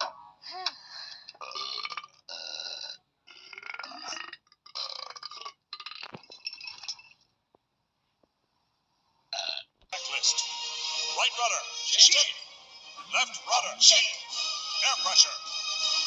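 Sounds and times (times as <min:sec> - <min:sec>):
cartoon creature burping: 0:01.4 - 0:06.9.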